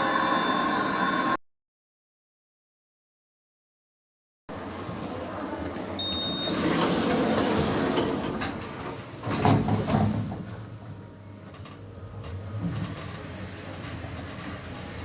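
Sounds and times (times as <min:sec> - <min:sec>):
lift running: 0:04.6 - 0:15.0
short electronic beep: 0:06.0 - 0:06.6.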